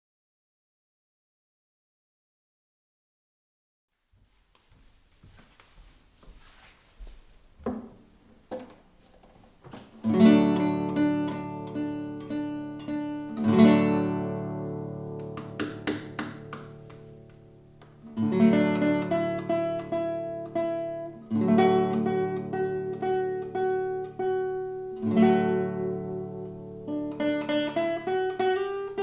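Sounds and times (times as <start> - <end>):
classical guitar playing: 7.7 - 29.0.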